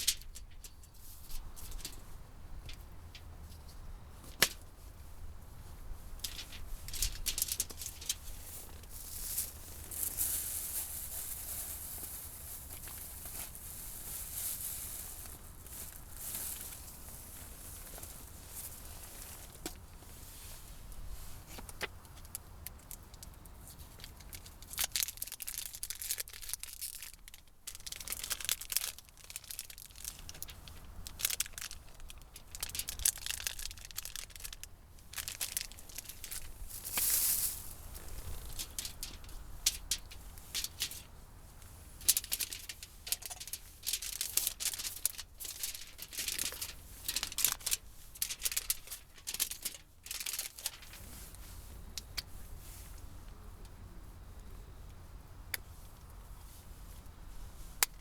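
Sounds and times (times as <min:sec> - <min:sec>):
packaging crinkling and rustling: 0:06.3 - 0:19.8, 0:21.5 - 0:41.1, 0:42.0 - 0:52.2.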